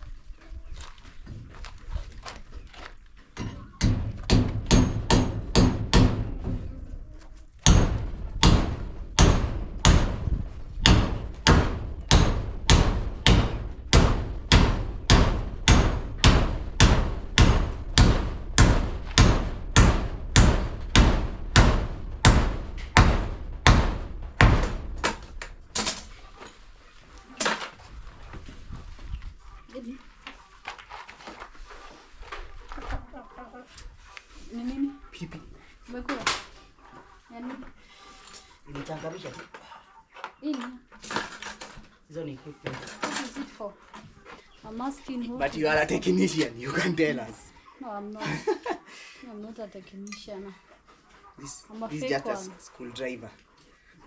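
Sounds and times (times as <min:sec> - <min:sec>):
hammer striking nail: 0:03.8 - 0:06.4, 0:07.6 - 0:10.2, 0:10.8 - 0:25.3.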